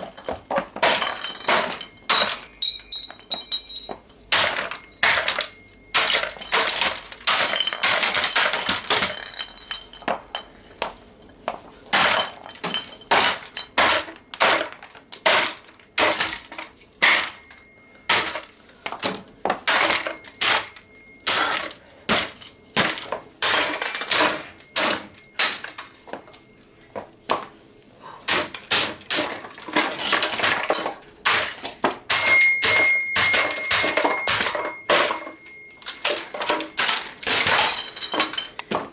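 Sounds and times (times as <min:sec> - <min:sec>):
plastic and metal parts cracking: 0:28.5 - 0:38.9
short metallic ring: 0:32.1 - 0:38.6.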